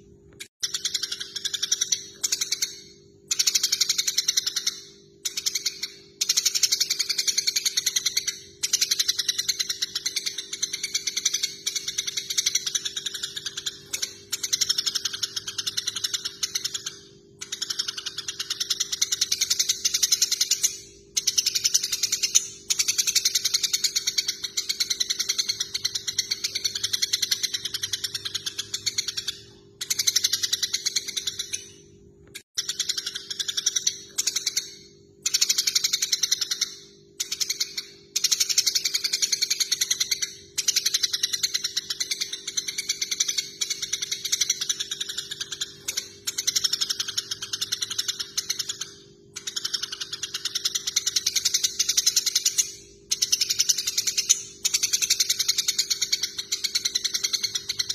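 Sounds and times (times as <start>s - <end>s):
sparrows chattering: 0.6s - 57.9s.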